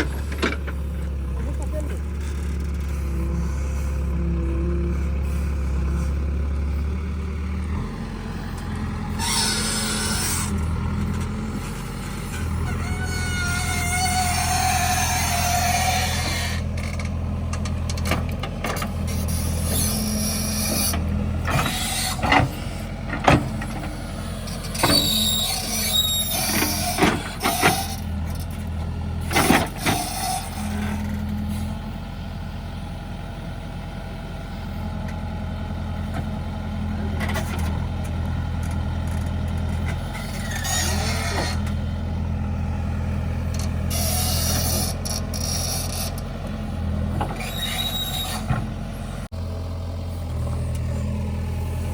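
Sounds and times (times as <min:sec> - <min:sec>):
diesel engine running: 0:00.0 - 0:51.9
squeals and clatters of working gear: 0:09.1 - 0:11.3, 0:12.2 - 0:17.1, 0:18.0 - 0:22.6, 0:24.4 - 0:31.7, 0:37.2 - 0:41.8, 0:43.5 - 0:49.1.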